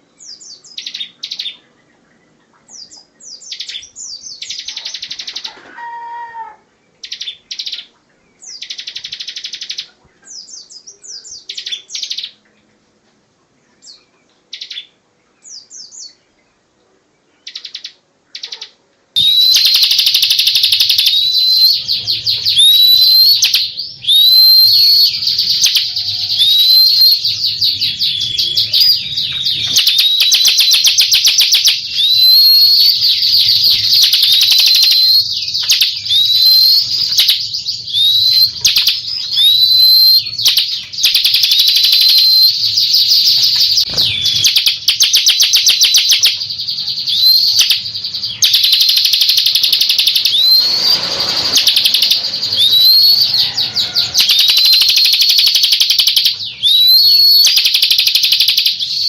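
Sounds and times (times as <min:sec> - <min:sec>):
bird singing rapid trills: 0:17.4 - 0:59.0.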